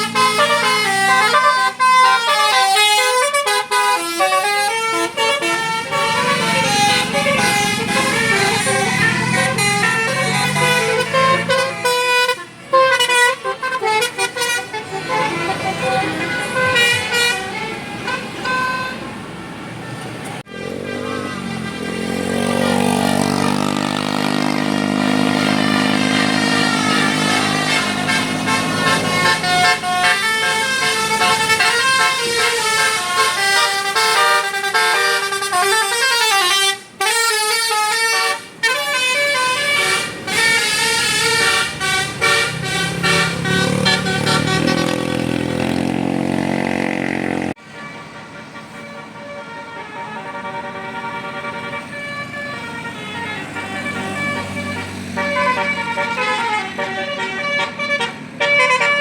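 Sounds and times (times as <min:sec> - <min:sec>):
multi-trumpet air horn playing tune: 0:00.0 - 0:19.0, 0:20.5 - 0:45.8, 0:47.7 - 0:59.0.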